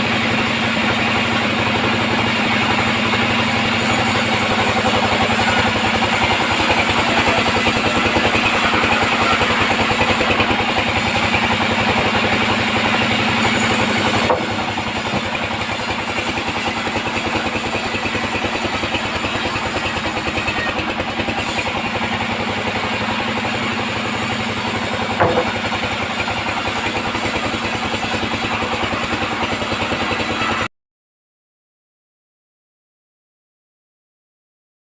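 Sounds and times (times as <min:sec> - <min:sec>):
band saw running: 0:00.0 - 0:30.7
short knock: 0:14.3 - 0:14.5, 0:25.2 - 0:25.6.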